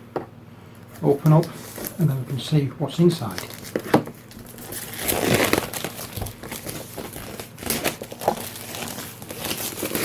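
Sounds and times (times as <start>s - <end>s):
plastic and cardboard crinkling: 3.1s - 10.0s.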